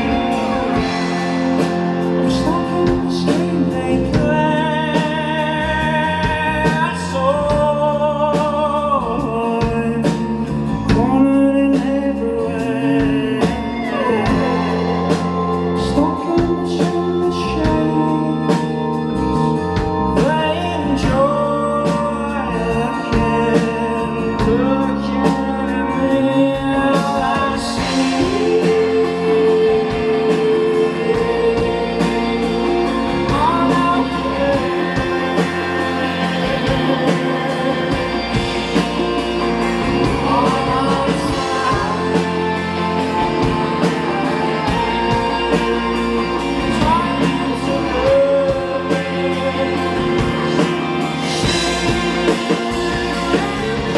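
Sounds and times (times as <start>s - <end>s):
cymbals: 0.0s - 3.8s, 27.0s - 53.9s
live rock band playing: 0.0s - 53.9s
man singing lead vocal: 0.0s - 53.9s.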